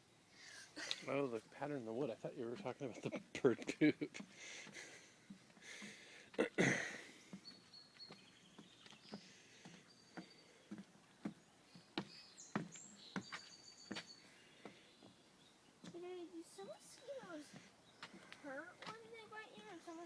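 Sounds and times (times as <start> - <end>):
footsteps crunching on trail: 4.2 - 20.0
faint bird chirps: 6.9 - 20.0.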